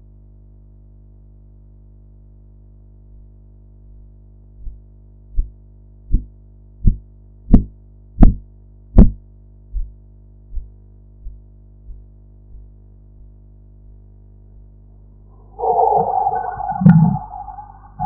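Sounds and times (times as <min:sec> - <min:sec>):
steady low hum: 0:03.9 - 0:18.0
tapping pulse beats: 0:15.4 - 0:18.0.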